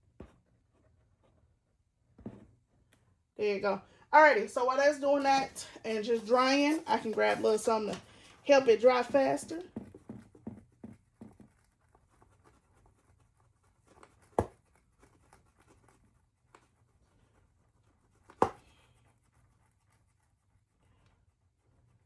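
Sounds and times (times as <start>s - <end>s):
handling and rustling: 4.2s - 19.0s.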